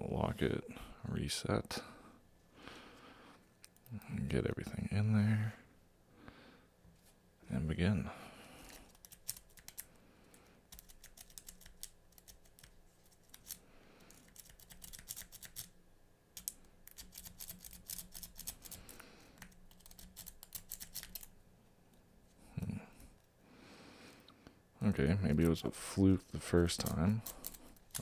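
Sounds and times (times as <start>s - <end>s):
lock pick clicking and scraping: 16.4s - 21.3s, 26.8s - 28.0s.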